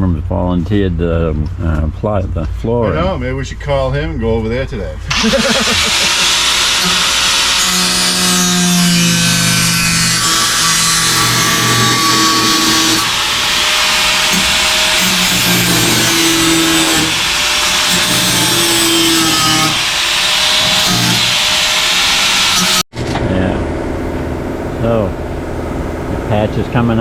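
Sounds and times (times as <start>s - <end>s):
power tool on sheet metal: 5.1s - 22.8s.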